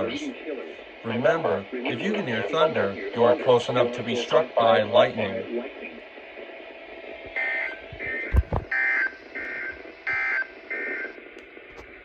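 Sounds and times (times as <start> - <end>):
low thumps: 8.0 - 8.8.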